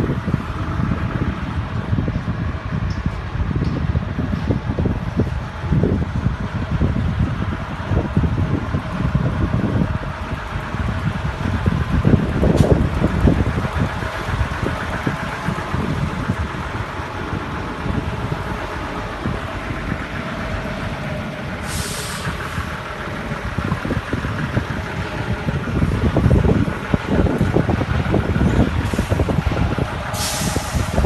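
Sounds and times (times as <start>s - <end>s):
tanker truck engine running: 0.0s - 31.0s
wind buffeting microphone: 0.0s - 31.0s
short burst of hiss: 21.6s - 22.5s, 30.1s - 31.0s.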